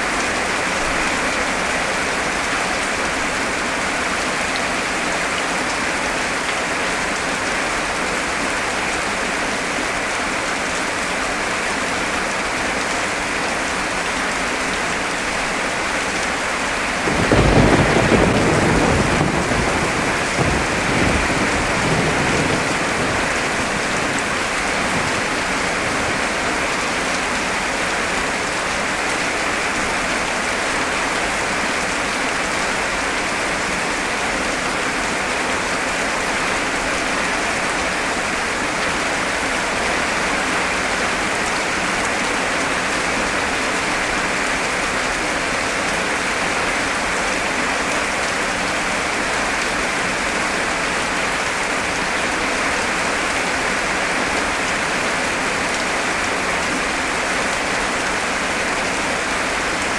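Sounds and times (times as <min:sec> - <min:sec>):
heavy rain falling: 0:00.0 - 0:59.9
thunder rumbling: 0:17.0 - 0:26.3.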